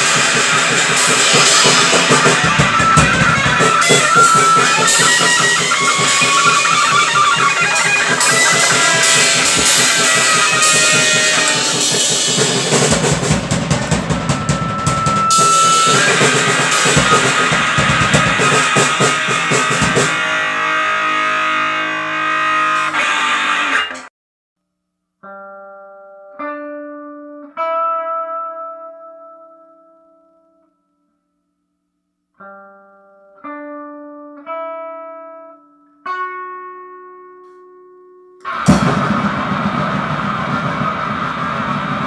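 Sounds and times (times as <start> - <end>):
noise-punk drums and distorted guitar: 0.0 - 24.1, 38.4 - 42.0.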